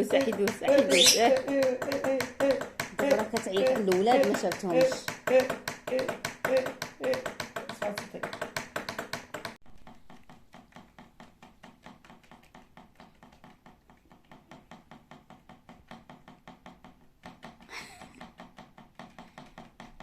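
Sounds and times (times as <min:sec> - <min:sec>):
lovebird chirping: 0:00.7 - 0:01.4
harsh bird call: 0:00.8 - 0:01.4.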